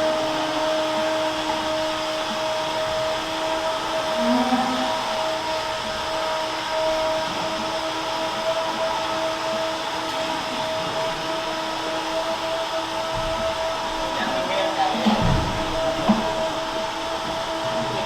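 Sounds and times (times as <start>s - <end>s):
milking machinery hum: 0.0s - 18.0s
steady whining tone: 0.0s - 18.0s.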